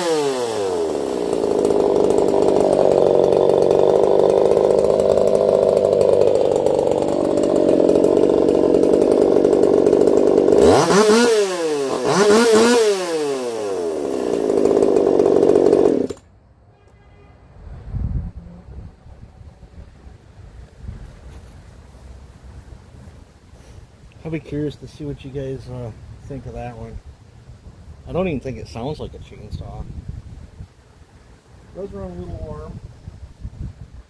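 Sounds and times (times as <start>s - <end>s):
chainsaw running at high revs: 0.0s - 16.2s.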